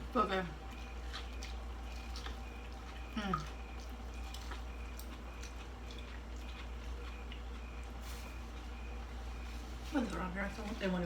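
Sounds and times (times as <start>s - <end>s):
faint chewing: 0.4s - 11.0s.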